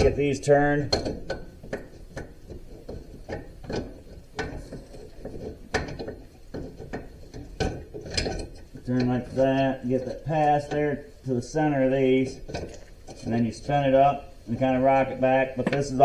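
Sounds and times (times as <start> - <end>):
metal clicks and clunks: 0.0 - 11.0, 14.8 - 16.0.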